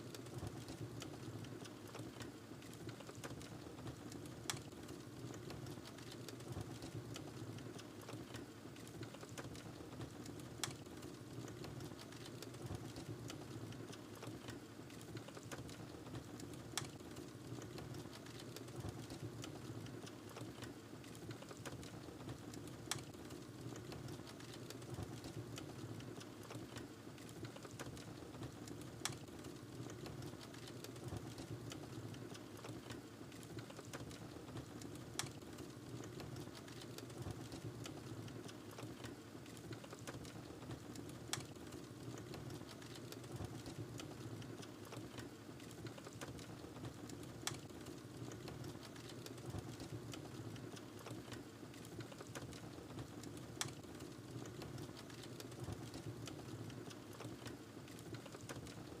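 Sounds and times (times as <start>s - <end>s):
fire burning with crackles: 0.1s - 58.8s.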